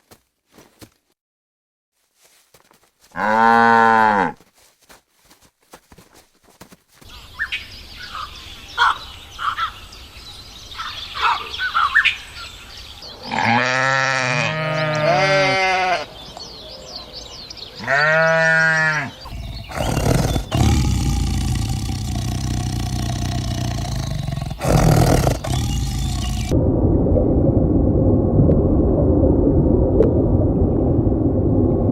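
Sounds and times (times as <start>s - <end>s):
farm animal bleating: 3.0s - 4.4s, 13.3s - 16.2s, 17.8s - 26.4s
low rumbling noise: 19.3s - 31.9s.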